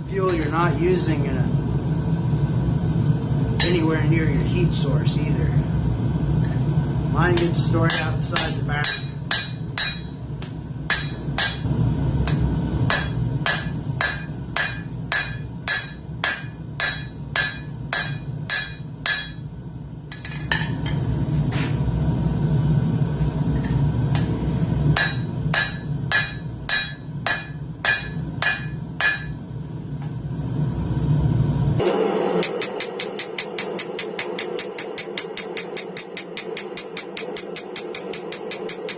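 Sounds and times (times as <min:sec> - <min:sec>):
gas forge roaring: 0:00.0 - 0:38.9
hammer blows on an anvil: 0:07.4 - 0:10.2, 0:10.9 - 0:19.5, 0:25.0 - 0:29.5, 0:31.8 - 0:38.9.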